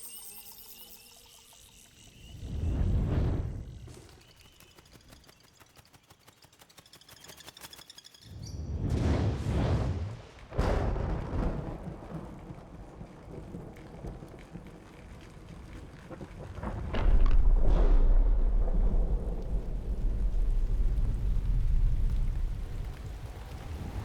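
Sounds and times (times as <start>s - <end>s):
loud boom: 8.8s - 11.7s, 16.9s - 21.8s
low rumbling: 16.6s - 24.0s.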